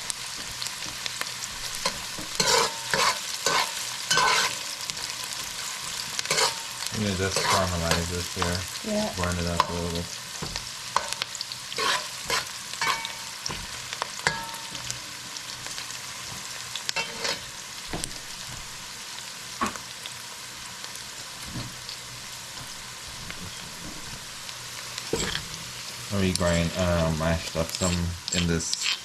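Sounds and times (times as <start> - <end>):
onions sizzling in a pan: 0.0 - 29.0
utensil scraping a pan: 1.8 - 5.1, 6.2 - 8.4, 10.4 - 13.6, 17.0 - 17.5.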